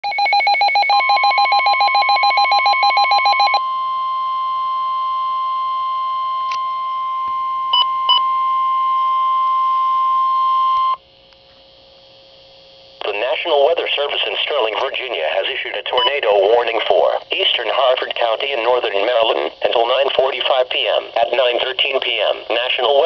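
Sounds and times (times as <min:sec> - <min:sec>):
rapid pulsing beeps: 0:00.0 - 0:03.6
steady high alarm tone: 0:00.0 - 0:11.0.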